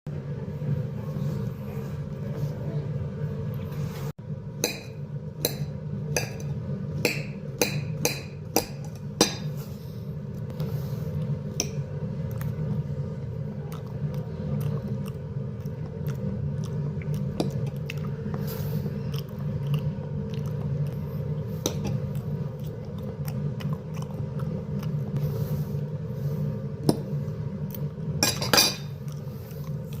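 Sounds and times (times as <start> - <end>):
steady low hum: 0.1 - 30.0
eating banana chewing: 12.2 - 25.9.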